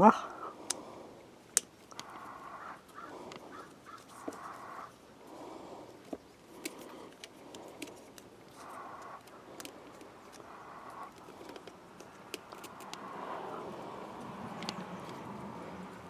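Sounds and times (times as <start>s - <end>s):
small parts clicking and rattling: 6.0s - 13.1s, 14.4s - 15.3s.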